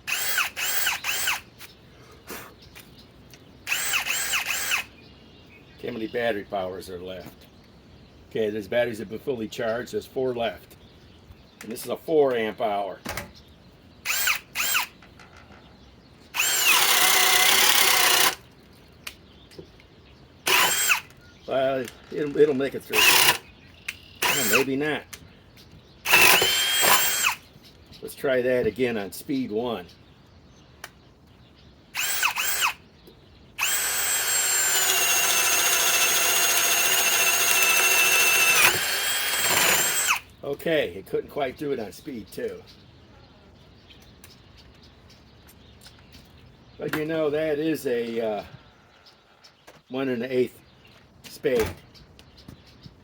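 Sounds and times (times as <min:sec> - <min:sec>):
cordless drill whine: 0:00.0 - 0:01.5, 0:03.6 - 0:04.9, 0:14.0 - 0:15.0, 0:16.4 - 0:18.4, 0:20.5 - 0:21.2, 0:22.2 - 0:23.4, 0:24.2 - 0:24.7, 0:26.1 - 0:27.4, 0:32.0 - 0:32.8, 0:33.6 - 0:40.3.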